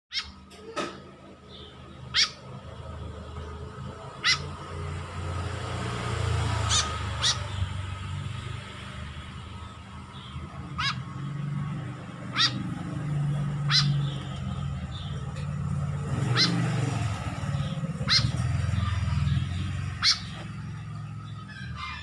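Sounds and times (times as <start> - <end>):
bird chick begging calls: 0.1 - 0.4, 2.0 - 2.5, 4.2 - 4.5, 6.5 - 7.6, 10.0 - 15.3, 16.2 - 22.0.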